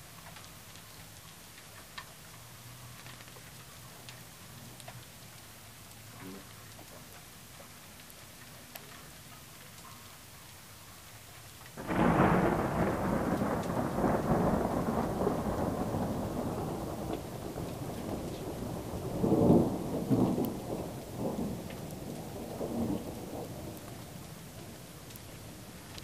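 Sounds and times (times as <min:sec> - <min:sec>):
thunder rumbling: 0:11.8 - 0:26.0.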